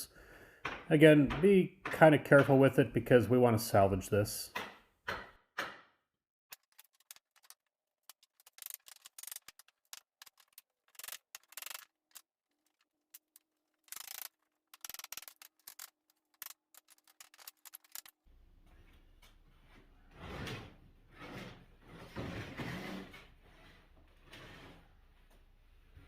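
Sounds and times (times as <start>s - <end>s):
hammer tapping on wood: 0.6s - 2.6s.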